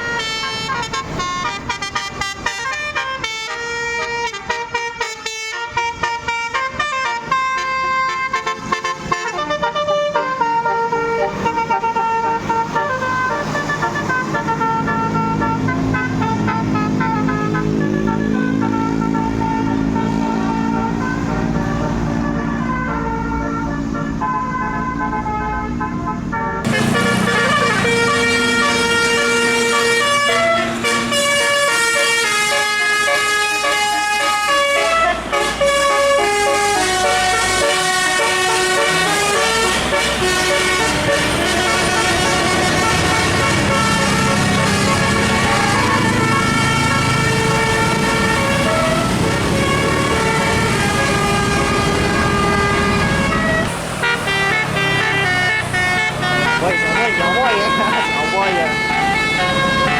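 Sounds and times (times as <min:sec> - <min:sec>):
bus horn playing melody: 0:00.0 - 0:59.9.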